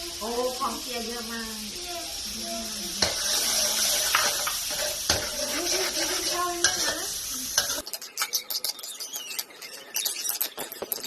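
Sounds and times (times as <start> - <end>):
rice sizzling in a pan: 0.0 - 11.0
spatula clicking and scraping: 3.0 - 11.0.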